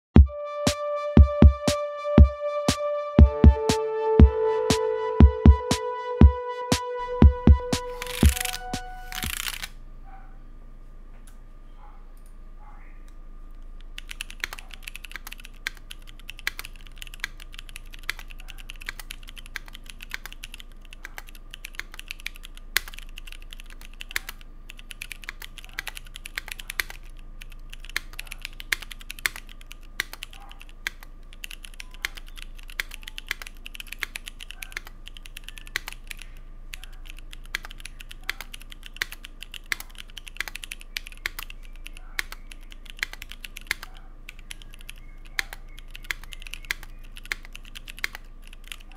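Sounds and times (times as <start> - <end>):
mechanical keyboard typing: 8.0 - 9.7, 13.8 - 48.9.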